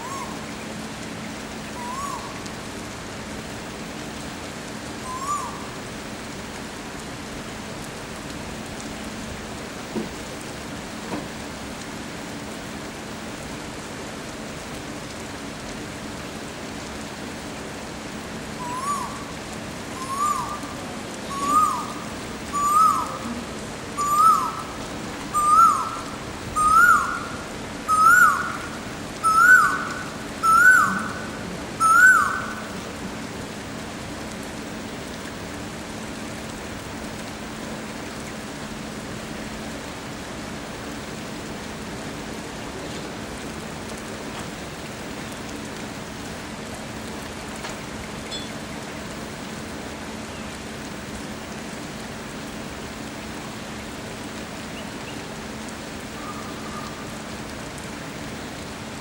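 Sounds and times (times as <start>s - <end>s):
steady hiss: 0.0s - 59.0s
koel whistled up-slurred call: 18.6s - 19.2s, 20.0s - 20.6s, 21.3s - 23.3s, 24.0s - 24.7s, 25.3s - 32.8s.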